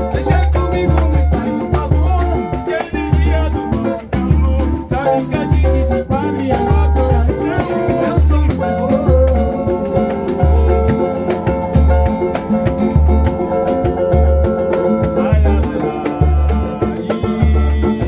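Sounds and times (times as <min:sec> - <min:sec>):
bending melody line: 0:00.0 - 0:18.0
shaker: 0:00.0 - 0:18.0
deep drum beating: 0:05.6 - 0:18.0.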